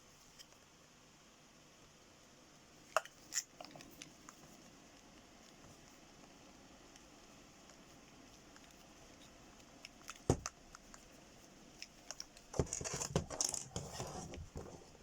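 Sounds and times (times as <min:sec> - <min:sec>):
plastic headphones knocking: 0:10.2 - 0:10.6
plastic rustling: 0:11.7 - 0:15.0.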